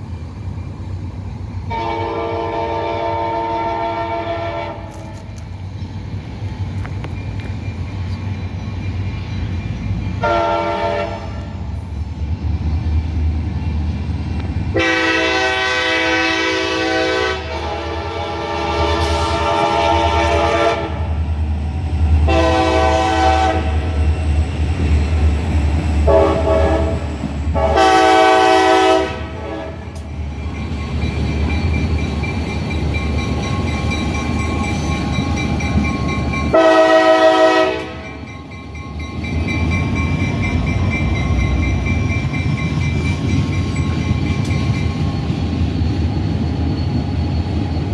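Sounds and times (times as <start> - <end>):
locomotive engine rumble: 0.0 - 47.9
rail noise: 0.0 - 47.9
locomotive air horn blasts: 1.7 - 5.3, 10.2 - 11.6, 14.7 - 21.1, 22.3 - 23.8, 26.1 - 27.0, 27.6 - 30.0, 36.5 - 38.0.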